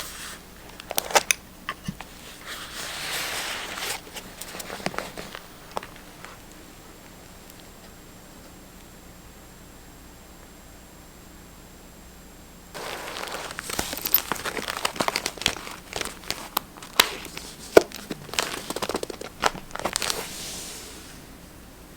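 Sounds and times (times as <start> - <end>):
paper crinkling and rustling: 0.0 - 6.6, 12.8 - 21.3.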